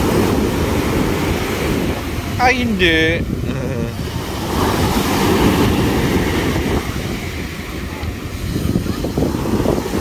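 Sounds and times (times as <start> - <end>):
waves breaking on shore: 0.0 - 10.0
wind rumbling on microphone: 0.0 - 10.0.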